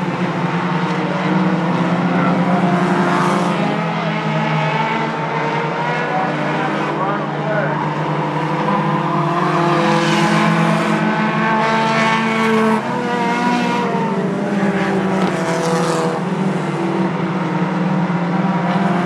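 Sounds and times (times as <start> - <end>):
race car engines: 0.0 - 19.0.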